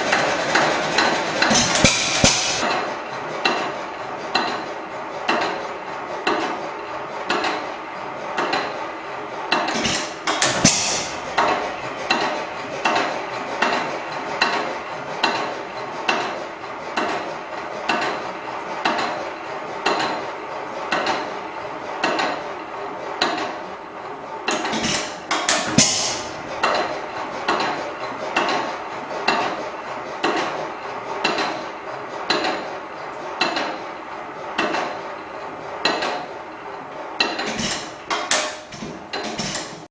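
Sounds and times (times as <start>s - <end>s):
hit-and-miss engine clicking: 0.0s - 39.9s
engine firing pop: 1.4s - 2.6s, 9.7s - 11.7s, 24.6s - 26.9s.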